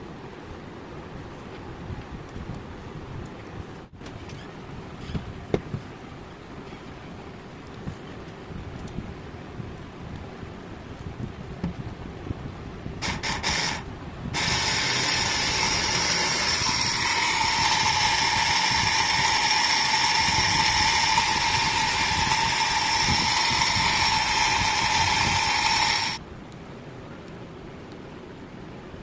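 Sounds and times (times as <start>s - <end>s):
water pump motor whining: 13.0s - 26.2s.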